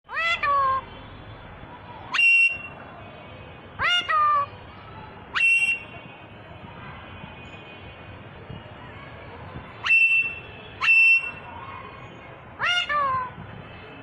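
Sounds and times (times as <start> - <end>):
parakeet whistled calls: 2.1 - 2.8, 5.3 - 6.0, 9.8 - 11.5.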